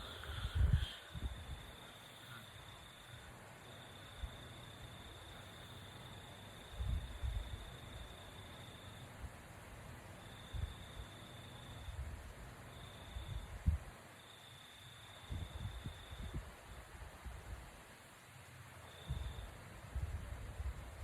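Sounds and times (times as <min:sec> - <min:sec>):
faint high whine: 0:00.0 - 0:09.1, 0:18.8 - 0:19.6.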